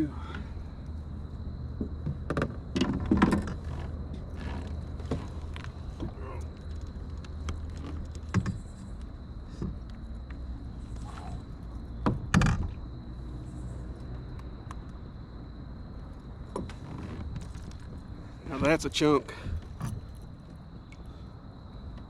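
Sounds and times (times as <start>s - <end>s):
knocks and clicks of gear: 1.8s - 10.4s.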